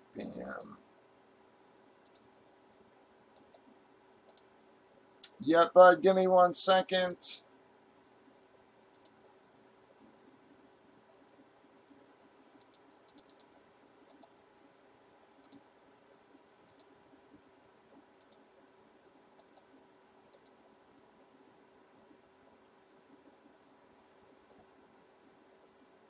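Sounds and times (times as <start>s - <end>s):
low steady hum: 0.0s - 26.0s
computer mouse double-clicks: 2.0s - 2.3s, 3.4s - 3.7s, 4.3s - 4.5s, 8.9s - 9.2s, 12.6s - 13.5s, 14.1s - 14.4s, 15.4s - 15.6s, 16.7s - 16.9s, 18.2s - 18.4s, 19.4s - 19.7s, 20.3s - 20.6s.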